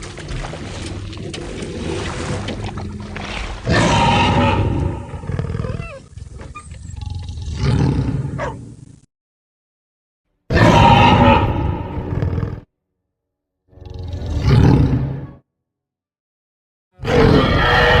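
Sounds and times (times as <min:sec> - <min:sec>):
dinosaur roar: 0:02.7 - 0:05.9, 0:17.0 - 0:18.0.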